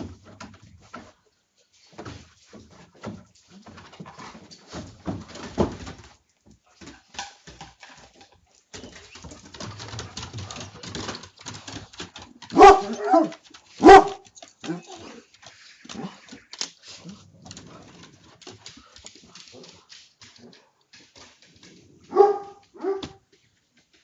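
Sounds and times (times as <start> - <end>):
dog barking: 12.5 - 14.2, 22.1 - 23.2.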